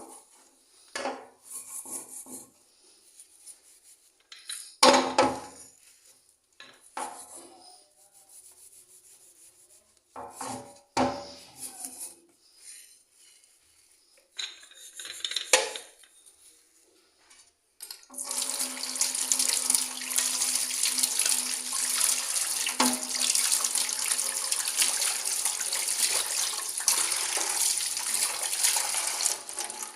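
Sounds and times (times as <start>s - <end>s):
scrubbing strokes: 7.5s - 10.1s
tap running into sink: 22.7s - 23.4s.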